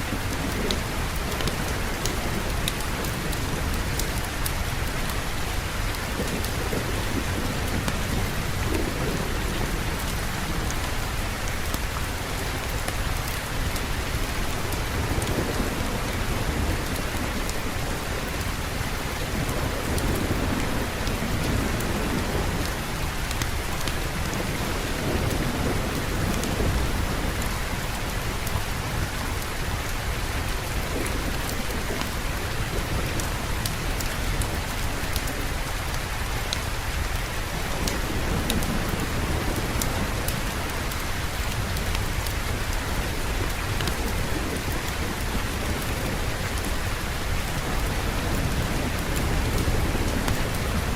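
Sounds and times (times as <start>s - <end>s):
heavy rain hiss: 0.0s - 50.9s
distant thunder rumble: 5.5s - 29.7s.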